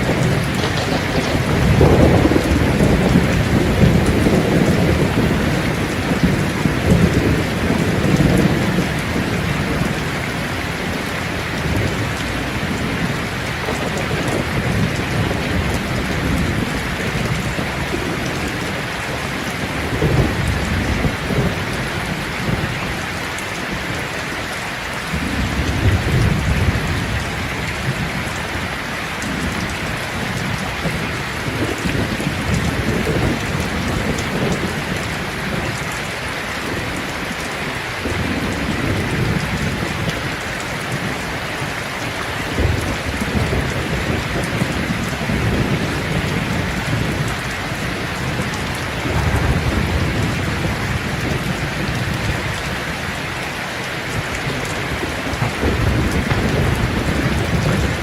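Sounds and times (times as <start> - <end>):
thunder rolls: 0.0 - 22.7, 42.5 - 52.8, 54.1 - 58.0
steady rain falling: 0.0 - 58.0.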